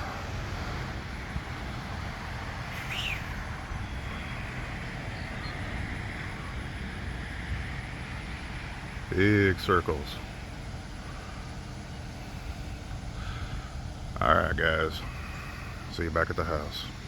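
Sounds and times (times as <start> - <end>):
low outdoor rumble: 0.0 - 17.0
short bird chirp: 2.7 - 4.3.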